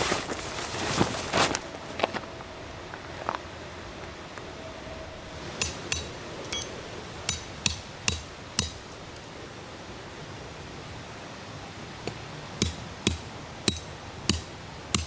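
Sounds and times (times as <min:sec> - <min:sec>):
sharp metallic clinks: 0:05.6 - 0:09.4, 0:12.6 - 0:15.0.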